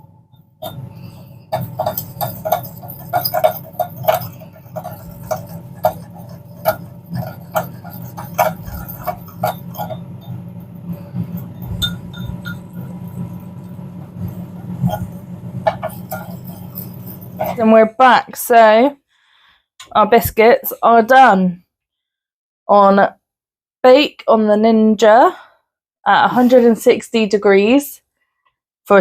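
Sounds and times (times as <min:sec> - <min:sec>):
steady low hum: 0:00.0 - 0:18.2
spoon clinking against a bowl: 0:00.6 - 0:17.7.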